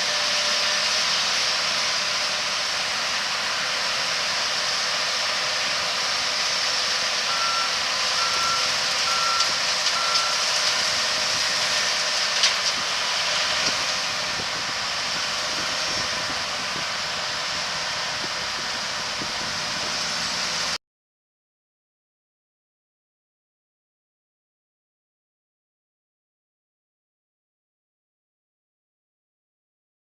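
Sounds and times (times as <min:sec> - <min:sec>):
harvest machinery rushing: 0:00.0 - 0:20.8
backup alarm beeping: 0:07.3 - 0:10.4.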